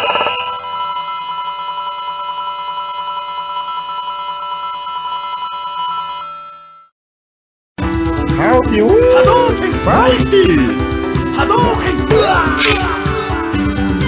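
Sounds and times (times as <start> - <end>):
pulsing electronic ringing tone: 0.0 - 6.9.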